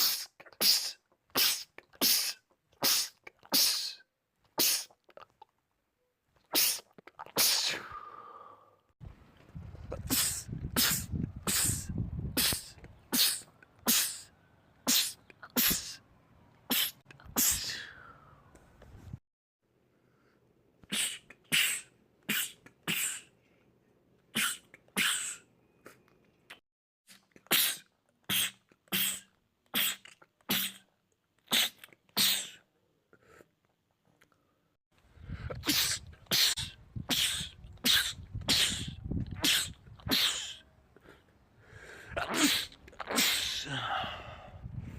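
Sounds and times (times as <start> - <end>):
men sneezing: 42.2 - 44.1.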